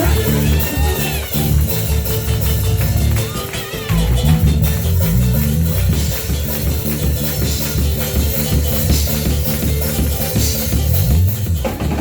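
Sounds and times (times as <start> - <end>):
bass guitar: 0.0 - 12.0
drum kit beat: 0.0 - 12.0
electric guitar: 0.0 - 12.0.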